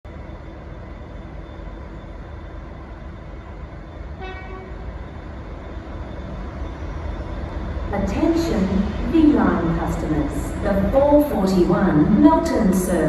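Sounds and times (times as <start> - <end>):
short horn toot: 4.2 - 4.8.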